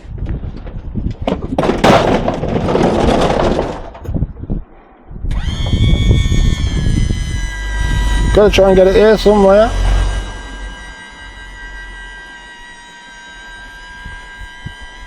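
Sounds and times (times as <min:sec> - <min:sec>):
pitched mechanical drone: 0:00.0 - 0:15.0
metal scraping clatter: 0:01.5 - 0:04.3.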